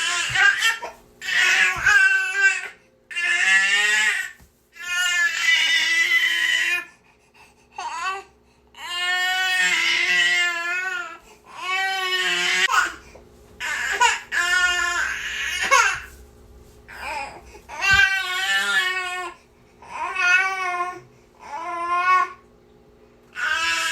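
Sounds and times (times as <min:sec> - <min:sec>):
infant crying: 0:00.0 - 0:06.9, 0:07.8 - 0:13.0, 0:13.6 - 0:16.1, 0:16.9 - 0:22.4, 0:23.4 - 0:23.9.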